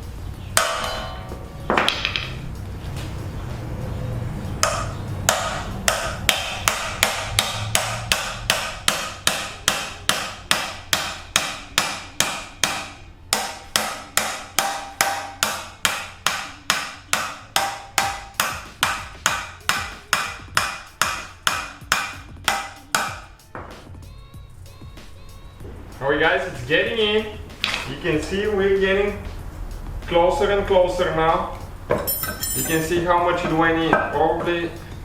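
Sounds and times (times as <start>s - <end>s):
hammer striking metal: 0.6s - 2.5s, 4.6s - 23.9s, 31.9s - 34.6s.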